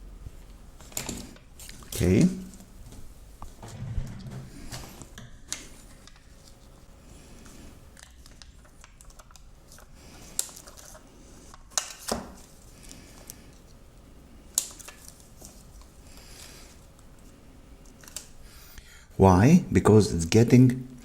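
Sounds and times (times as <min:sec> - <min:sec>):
faint low background noise: 0:00.0 - 0:21.0.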